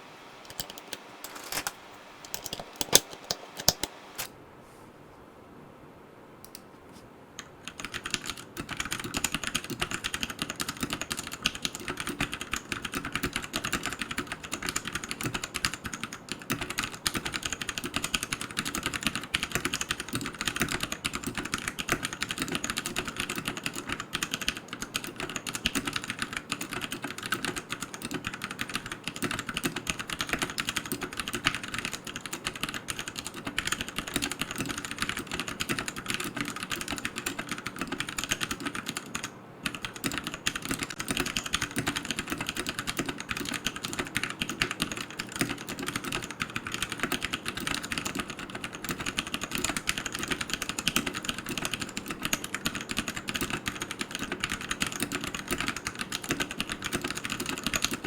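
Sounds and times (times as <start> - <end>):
mechanical keyboard typing: 0.4 - 4.3, 7.4 - 58.0.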